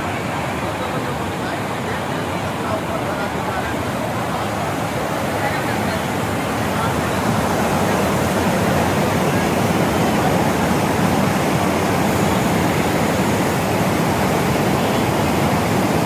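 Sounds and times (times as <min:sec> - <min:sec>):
waterfall pouring and splashing: 0:00.0 - 0:16.0.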